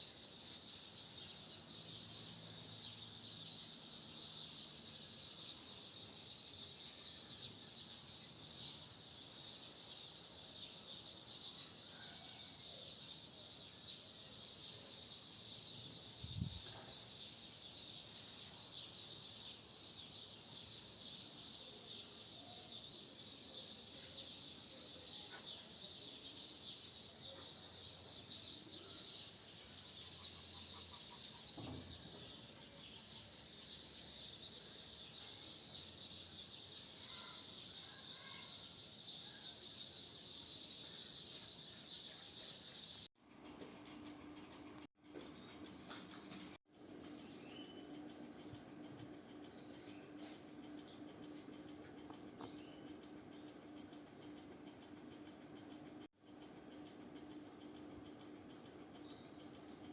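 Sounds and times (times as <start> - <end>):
high-pitched insect chirring: 43.2 - 59.9.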